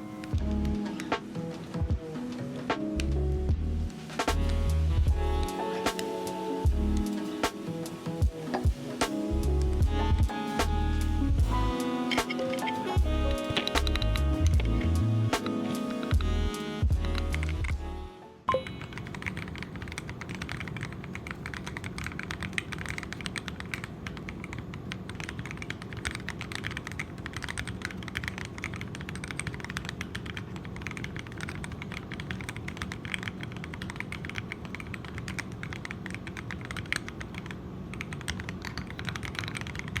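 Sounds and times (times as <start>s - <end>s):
mechanical keyboard typing: 13.4s - 14.8s, 17.0s - 17.8s, 18.6s - 40.0s.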